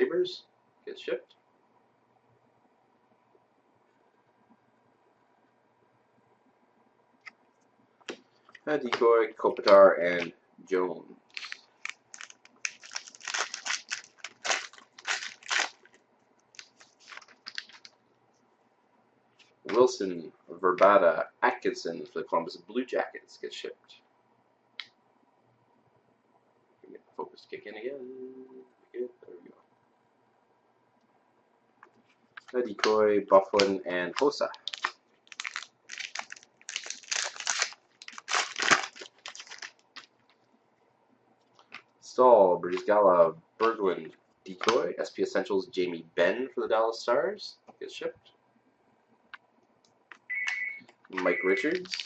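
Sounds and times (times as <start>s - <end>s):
card pack wrapper crinkling and tearing: 11.3s - 18.0s, 33.5s - 40.1s, 51.6s - 52.0s.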